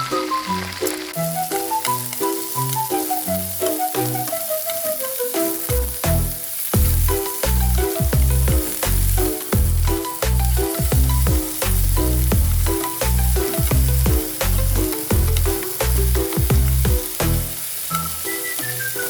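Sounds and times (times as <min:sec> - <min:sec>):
chicken frying in oil: 0:00.0 - 0:19.0
music with heavy bass beat: 0:05.7 - 0:17.6.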